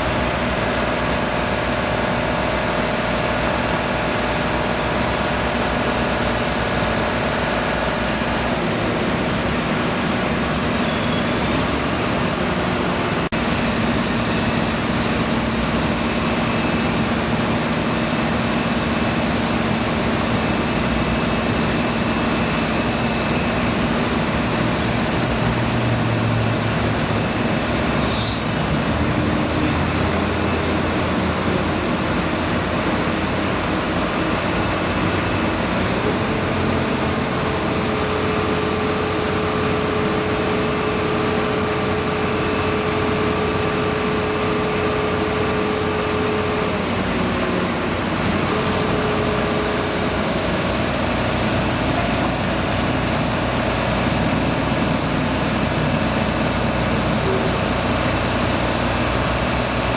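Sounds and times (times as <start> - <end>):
machinery droning hum: 0.0 - 59.9
brief high hiss: 27.9 - 28.7.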